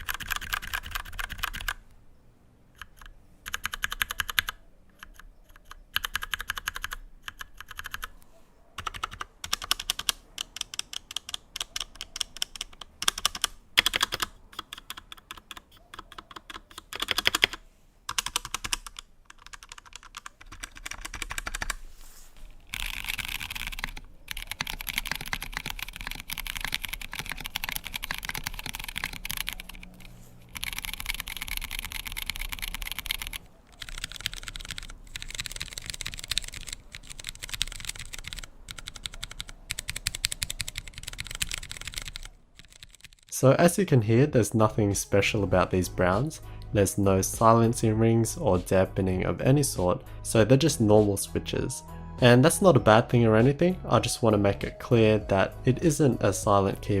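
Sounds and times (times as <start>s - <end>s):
mechanical keyboard typing: 0.0s - 1.8s, 2.8s - 8.2s, 8.8s - 21.8s, 22.6s - 43.4s.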